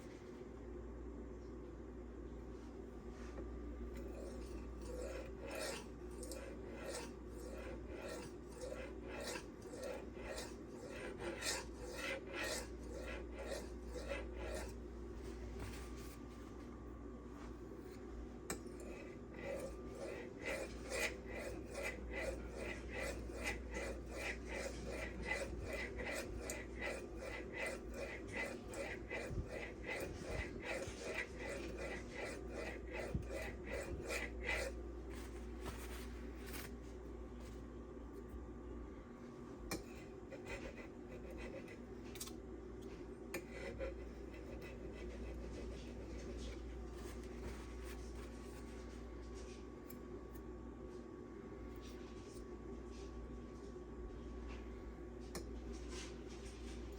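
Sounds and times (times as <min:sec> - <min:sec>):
knife blade rasping on whetstone: 0:04.0 - 0:14.8, 0:18.5 - 0:34.8, 0:39.7 - 0:41.8, 0:43.4 - 0:46.6.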